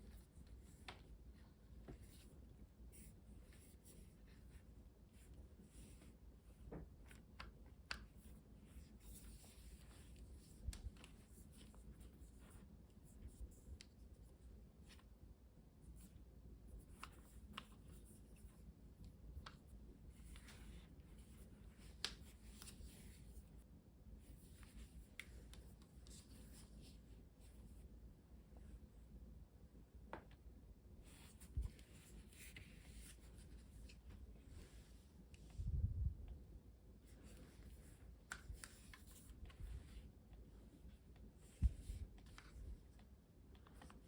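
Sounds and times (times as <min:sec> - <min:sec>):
clicks and taps handling headphones: 0:21.8 - 0:22.9, 0:30.1 - 0:30.5, 0:38.2 - 0:39.7.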